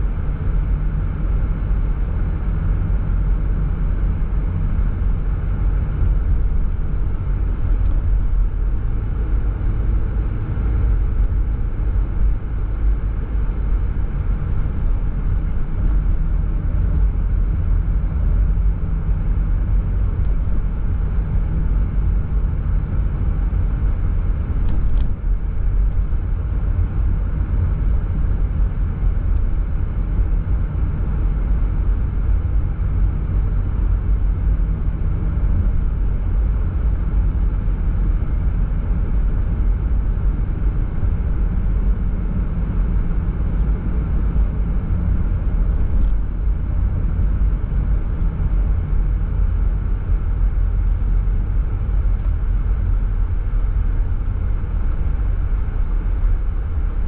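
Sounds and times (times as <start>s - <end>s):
car road and engine rumble: 0.0s - 57.0s.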